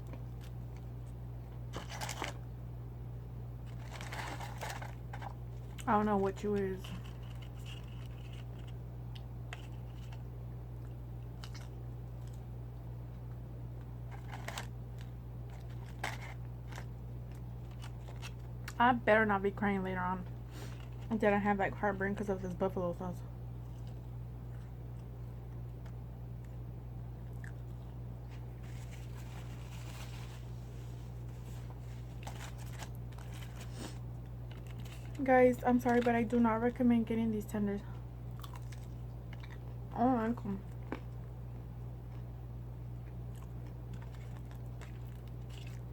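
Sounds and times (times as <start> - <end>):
food crunches: 0.0 - 2.4, 3.6 - 5.9, 6.8 - 18.8, 27.2 - 30.4, 31.8 - 35.2, 38.3 - 40.0, 40.6 - 42.3, 43.0 - 45.9
low hum: 0.0 - 45.9
chewing fried food: 6.6 - 18.8, 27.2 - 30.2, 31.6 - 35.2, 38.3 - 45.9.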